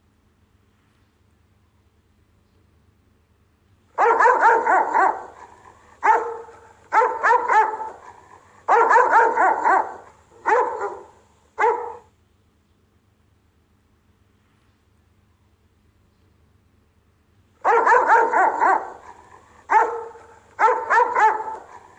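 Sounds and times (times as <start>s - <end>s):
dog barking deeply: 4.0s - 12.1s, 17.6s - 21.9s.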